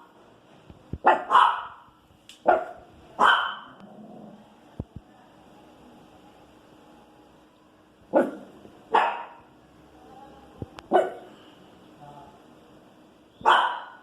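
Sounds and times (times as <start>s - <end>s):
dog barking sharply: 1.1s - 1.8s, 2.4s - 3.7s, 13.4s - 14.0s.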